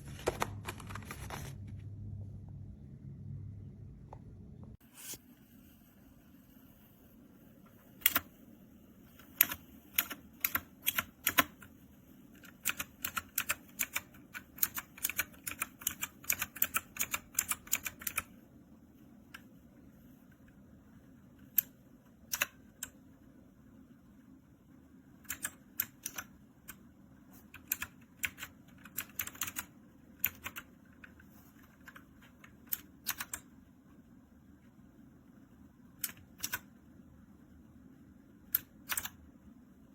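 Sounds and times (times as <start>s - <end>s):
typing on mechanical keyboard: 8.0s - 8.3s, 9.1s - 11.7s, 12.4s - 18.3s, 22.3s - 23.0s, 25.2s - 33.5s, 36.0s - 36.7s, 38.5s - 39.2s.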